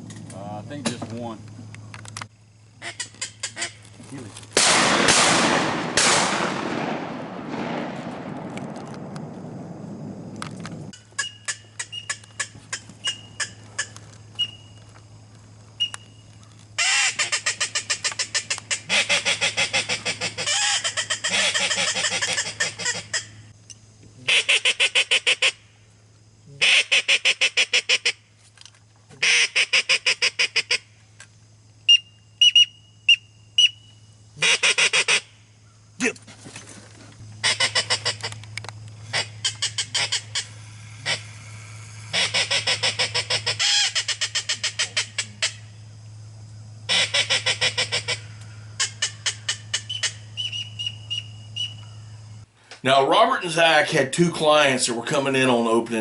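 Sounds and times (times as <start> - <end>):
high whistled peeps: 10.9 - 14.9, 15.8 - 16.4, 31.8 - 34.1, 46.9 - 52.4
duck quacking rapidly: 16.8 - 23.3, 24.3 - 25.6, 26.6 - 28.2, 29.2 - 30.8, 34.4 - 35.3, 37.4 - 38.3, 39.1 - 41.3, 42.1 - 45.6, 46.9 - 48.2.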